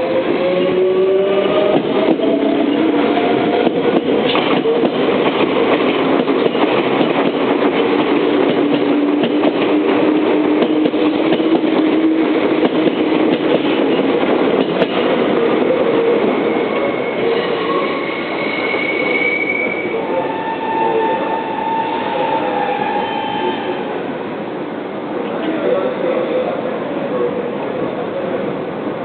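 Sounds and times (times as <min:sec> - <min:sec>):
train rumbling past: 0:00.0 - 0:29.0
wheels clacking over rail joints: 0:01.7 - 0:15.7.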